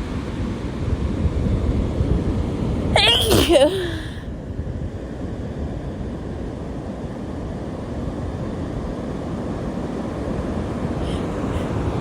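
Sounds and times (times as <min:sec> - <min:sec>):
wind buffeting microphone: 0:00.0 - 0:12.0
ocean waves breaking: 0:06.6 - 0:12.0.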